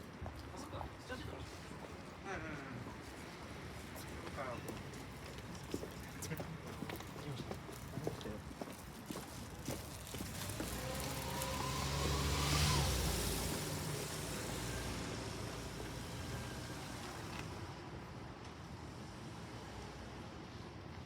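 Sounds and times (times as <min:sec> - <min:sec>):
vehicle passing by: 0:10.0 - 0:17.5.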